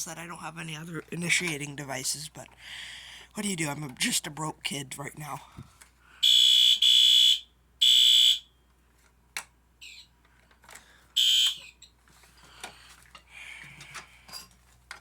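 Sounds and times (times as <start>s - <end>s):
fire alarm horn blasts: 6.2s - 8.6s, 11.2s - 11.7s.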